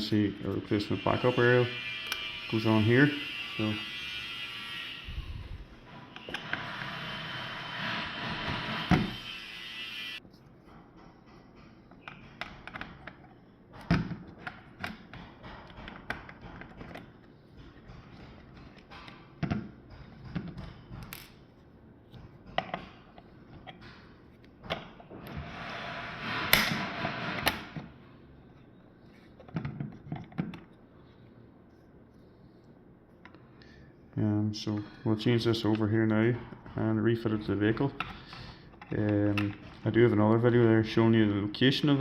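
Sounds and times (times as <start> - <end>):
plastic parts clicking and knocking: 10.6 - 25.2, 29.2 - 30.8, 35.5 - 40.5.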